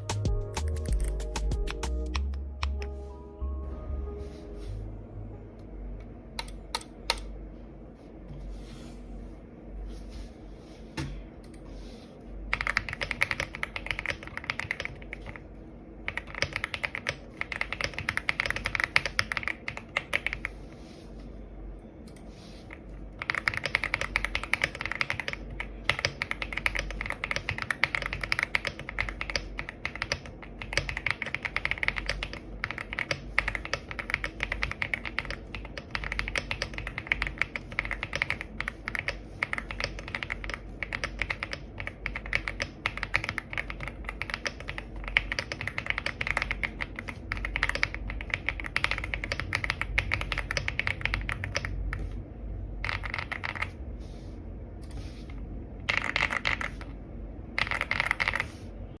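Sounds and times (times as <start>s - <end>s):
mechanical keyboard typing: 0.0s - 2.8s, 12.5s - 15.4s, 16.0s - 20.6s, 22.8s - 52.2s, 52.8s - 53.8s, 55.8s - 56.9s, 57.5s - 58.6s.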